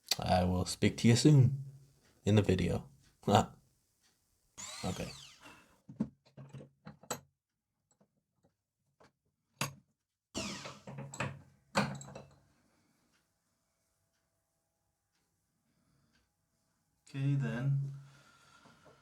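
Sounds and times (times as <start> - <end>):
rotary tool whirring: 4.6 - 5.7, 10.4 - 11.1
workbench handling clicks and knocks: 5.9 - 7.3, 10.8 - 12.4.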